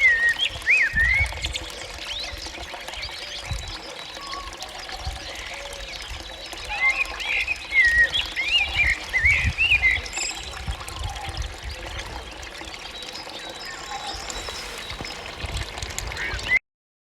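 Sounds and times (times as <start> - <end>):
bird warbling song: 0.0 - 16.6
faint bird calls: 12.1 - 16.6.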